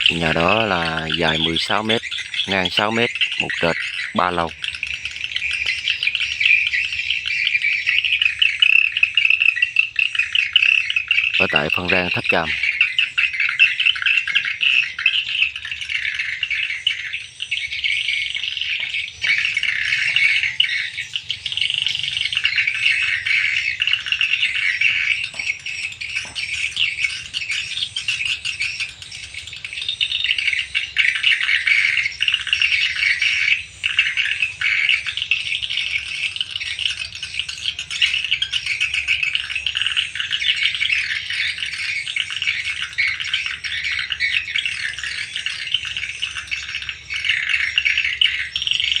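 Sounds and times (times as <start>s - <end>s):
swiftlets twittering: 0.0s - 17.8s.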